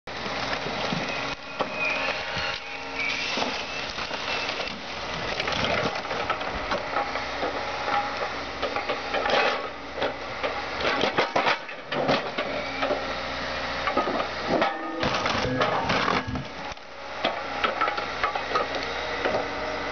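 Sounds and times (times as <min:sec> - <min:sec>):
excavator diesel engine running: 0:00.1 - 0:19.9
car body metal creaking and crunching: 0:14.6 - 0:16.6.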